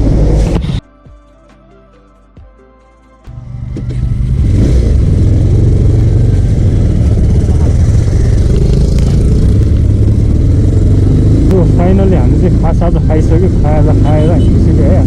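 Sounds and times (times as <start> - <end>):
motorcycle engine running: 0.0 - 0.8, 3.4 - 15.0.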